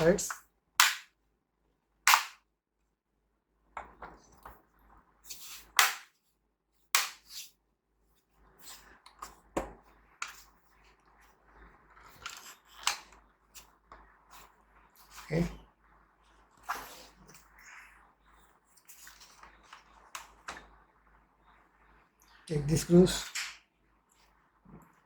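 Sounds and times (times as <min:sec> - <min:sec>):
plastic clips snapping into place: 0:02.1 - 0:02.4.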